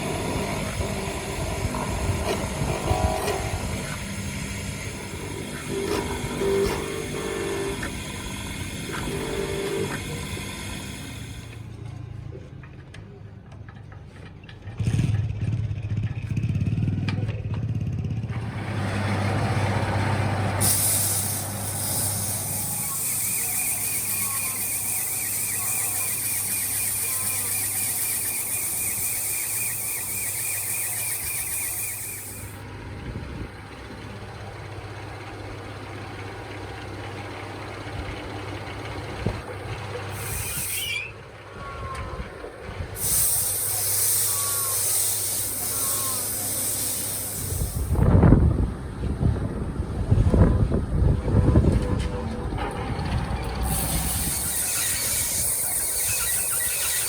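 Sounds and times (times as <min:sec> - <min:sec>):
compressed air hissing: 0:00.0 - 0:11.6, 0:19.4 - 0:32.6, 0:40.1 - 0:41.1, 0:42.9 - 0:48.1, 0:53.6 - 0:57.0
steady machine hum: 0:00.0 - 0:11.8, 0:18.3 - 0:51.8.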